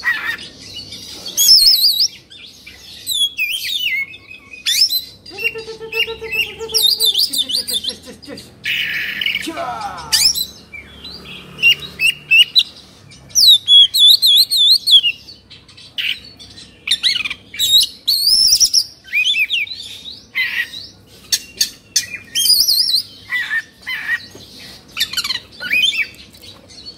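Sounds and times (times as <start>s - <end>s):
songbird chirping and trilling: 0.0s - 26.9s.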